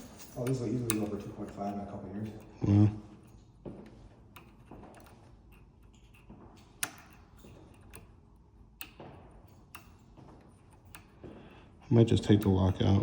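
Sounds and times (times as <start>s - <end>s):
lock pick clicking in a lock: 0.0s - 2.5s, 4.3s - 11.2s.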